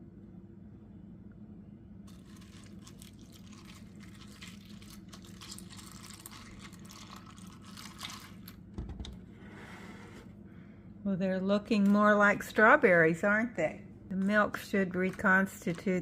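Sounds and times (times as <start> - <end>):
milk pouring into a bowl: 2.1 - 8.7.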